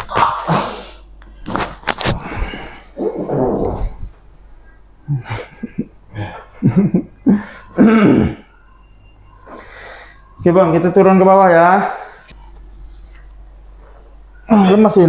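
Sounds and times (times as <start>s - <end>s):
man coughing and grunting: 7.8s - 8.4s.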